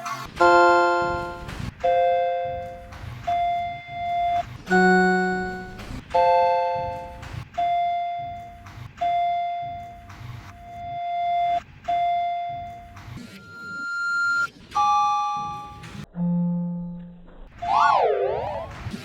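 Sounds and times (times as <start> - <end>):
elevator chime dinging: 0.4 - 8.6, 14.8 - 17.0.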